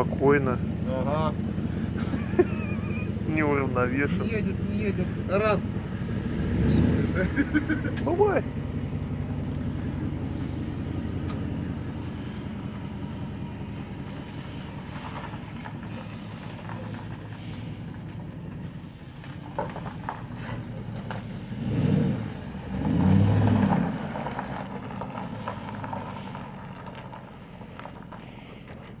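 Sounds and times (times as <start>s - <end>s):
car engine idling: 0.0s - 29.0s
engine revving: 0.0s - 29.0s.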